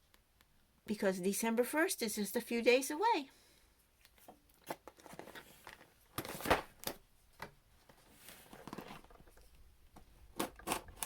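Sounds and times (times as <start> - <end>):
packaging clicks and rustles: 4.1 - 9.6.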